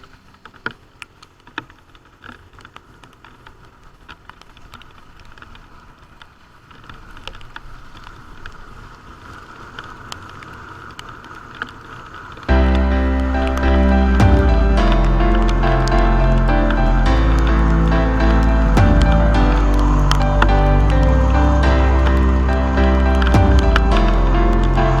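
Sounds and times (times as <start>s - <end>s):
wet road noise: 0.0s - 25.0s
motorcycle rumbling: 12.5s - 25.0s.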